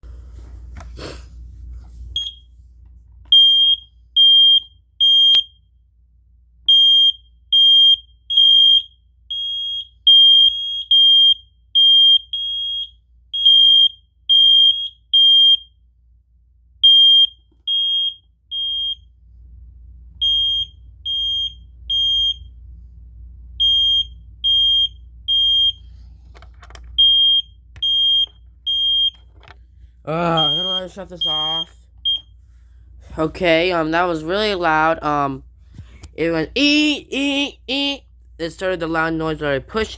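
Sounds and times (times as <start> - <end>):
smoke alarm beeping: 2.2 - 2.6, 3.3 - 5.7, 6.7 - 15.8, 16.8 - 19.1, 20.2 - 22.6, 23.6 - 25.9, 27.0 - 29.4, 30.1 - 32.4.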